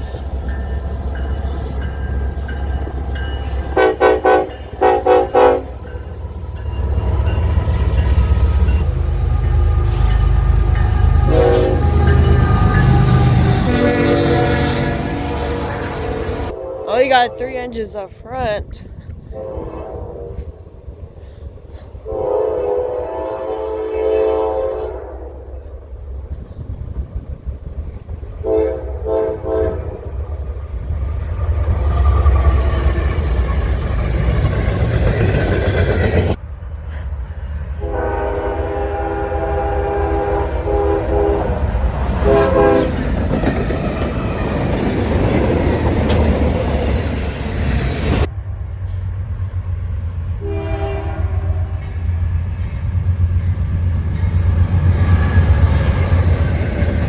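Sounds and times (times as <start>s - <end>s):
rumble of passing trains: 0.0s - 57.0s
train horn blasts: 3.7s - 5.9s, 8.8s - 17.6s, 19.3s - 20.6s, 22.0s - 25.4s, 28.4s - 30.1s, 37.8s - 43.1s, 50.4s - 51.8s.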